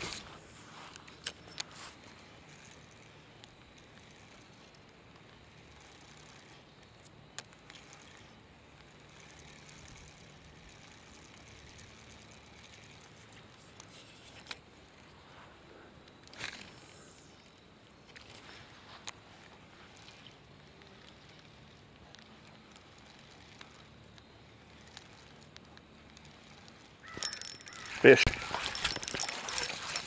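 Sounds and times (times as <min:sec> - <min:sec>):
faint outdoor background noise: 0:00.0 - 0:30.0
sharp clicks: 0:02.6 - 0:12.9.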